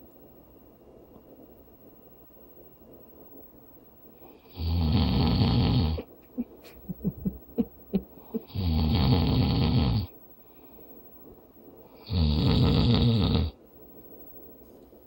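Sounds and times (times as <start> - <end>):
man snoring: 4.4 - 6.1, 8.4 - 10.1, 12.0 - 13.6.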